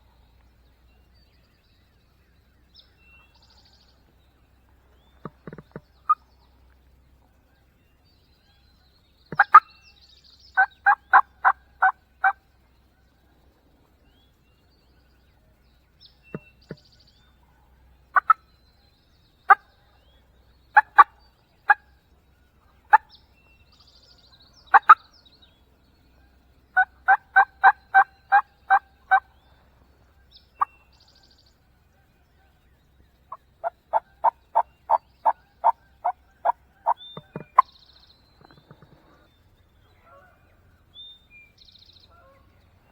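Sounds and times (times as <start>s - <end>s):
turkey yelping: 9.4s - 9.6s, 10.6s - 12.4s, 24.7s - 25.0s, 26.8s - 29.3s.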